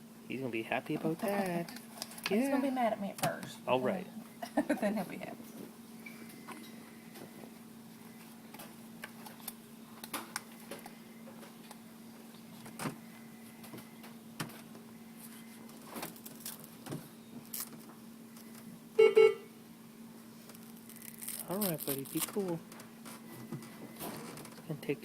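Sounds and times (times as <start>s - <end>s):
low machine hum: 0.0s - 25.0s.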